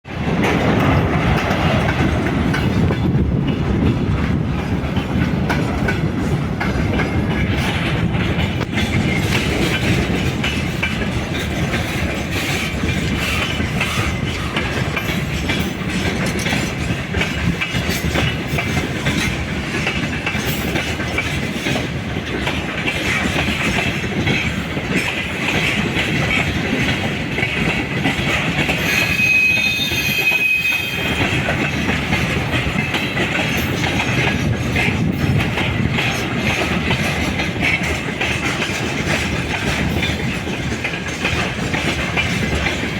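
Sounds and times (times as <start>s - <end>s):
train rumble: 0.0s - 42.9s
train wheels clicking on rail joints: 0.0s - 42.9s
high wheel squeal: 28.8s - 31.3s.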